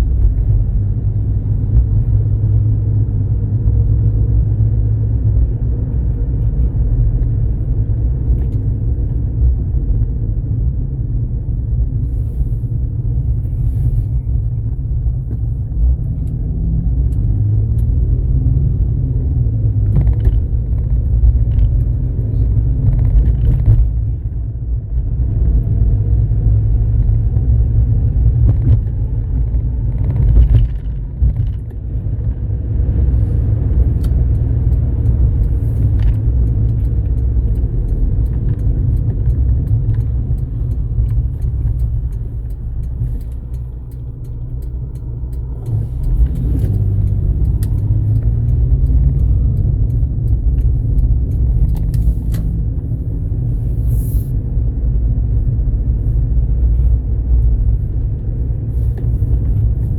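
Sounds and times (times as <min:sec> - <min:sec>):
road and engine rumble in car: 0:00.0 - 0:59.9
faint clicks: 0:33.9 - 0:52.9.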